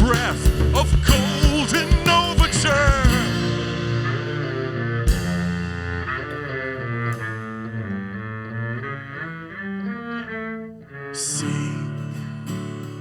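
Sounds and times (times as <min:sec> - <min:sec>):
live rock band music: 0:00.0 - 0:08.3
cymbal hit: 0:01.2 - 0:06.6.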